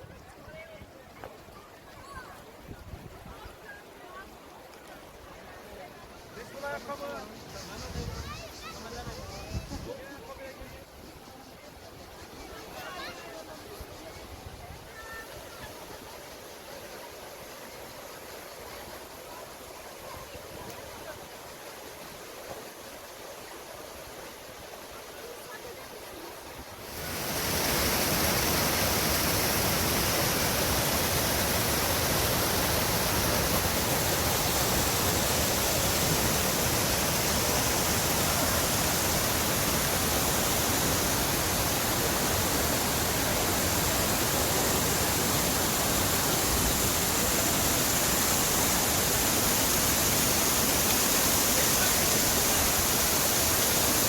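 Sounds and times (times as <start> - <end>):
waterfall rushing: 23.4 - 54.0.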